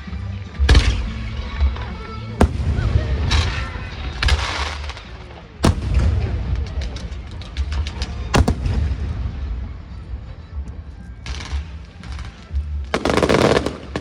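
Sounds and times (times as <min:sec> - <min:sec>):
bass-heavy music: 0:00.0 - 0:14.0
fireworks crackling: 0:02.2 - 0:09.4, 0:11.2 - 0:14.0
fireworks bangs: 0:02.4 - 0:09.5, 0:13.0 - 0:14.0.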